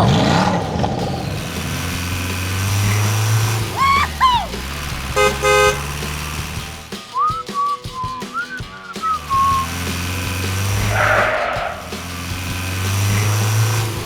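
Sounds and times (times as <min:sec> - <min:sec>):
vehicle engine rumble: 0:00.0 - 0:07.7, 0:08.3 - 0:14.0
swooping squeaky tones: 0:03.6 - 0:06.0, 0:07.1 - 0:12.5
car horn honks: 0:04.0 - 0:06.6.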